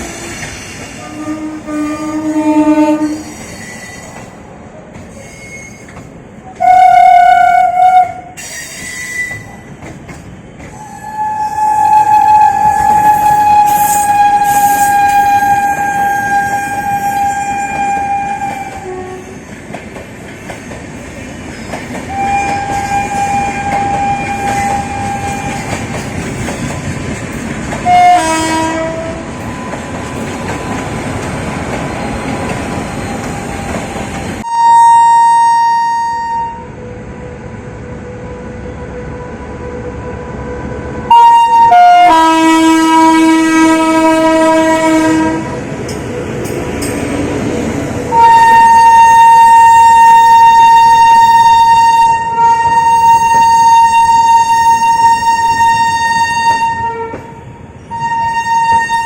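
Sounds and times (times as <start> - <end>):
train rumble and wheel clatter: 0.0 - 34.5, 35.4 - 59.0
locomotive horn blasts: 1.0 - 3.3, 6.6 - 8.4, 10.8 - 19.3, 22.1 - 25.7, 27.8 - 29.3, 34.4 - 36.8, 41.1 - 45.6, 48.1 - 57.3, 57.9 - 59.0.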